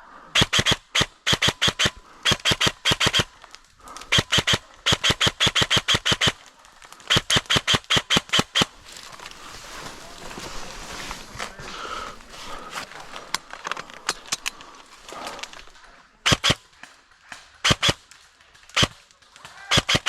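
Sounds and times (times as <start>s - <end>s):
airsoft gun firing rapid shots: 0.4s - 3.3s, 4.1s - 8.8s, 16.2s - 20.0s.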